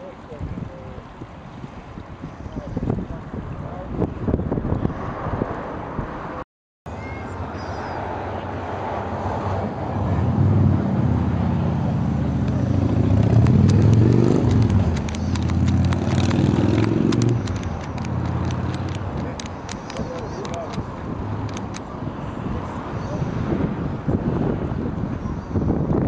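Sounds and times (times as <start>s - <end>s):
engine running: 9.6s - 22.0s
faint clicking: 12.4s - 20.8s.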